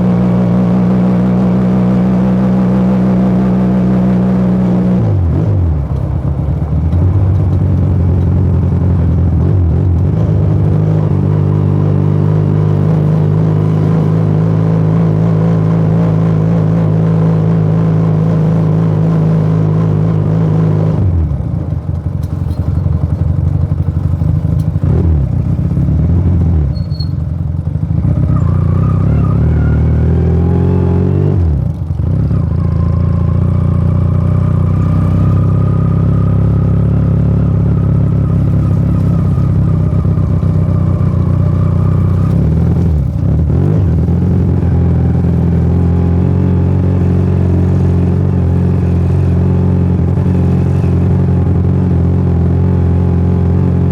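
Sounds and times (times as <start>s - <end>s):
motorcycle engine and exhaust: 0.0s - 53.9s.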